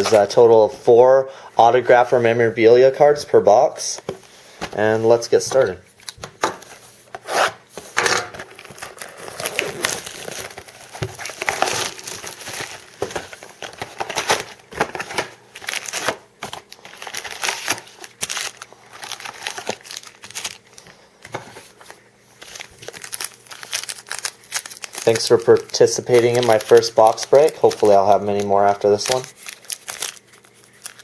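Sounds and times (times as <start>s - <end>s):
plastic wrapping tearing and crinkling: 8.2s - 31.0s.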